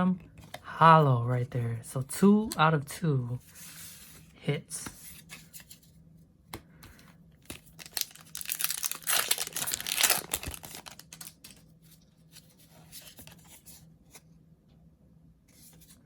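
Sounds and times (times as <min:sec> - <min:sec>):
foil wrapper crinkling and tearing: 0:07.5 - 0:11.6.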